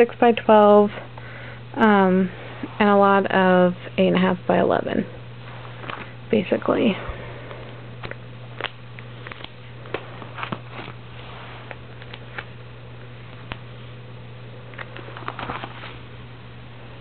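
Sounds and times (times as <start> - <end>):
steady low hum: 0.0 - 17.0
album pages turning: 5.6 - 6.1, 8.0 - 13.7, 14.7 - 16.1.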